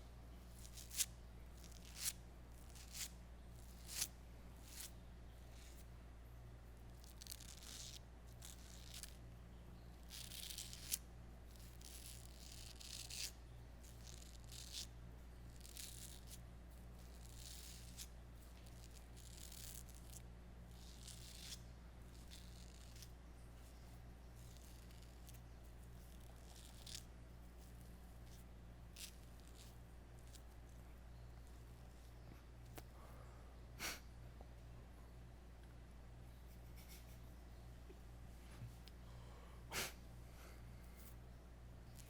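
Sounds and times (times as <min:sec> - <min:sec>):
faint low hum: 0:00.0 - 0:42.0
razor scraping stubble: 0:00.5 - 0:05.8, 0:06.8 - 0:09.2, 0:10.0 - 0:16.4, 0:17.0 - 0:32.8.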